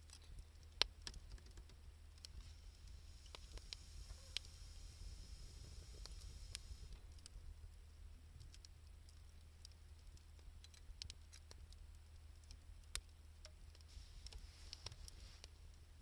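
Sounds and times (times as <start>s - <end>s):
wood fire crackling: 0.0s - 16.0s
low steady hum: 1.8s - 9.9s
sharp pops of fire: 2.2s - 7.4s.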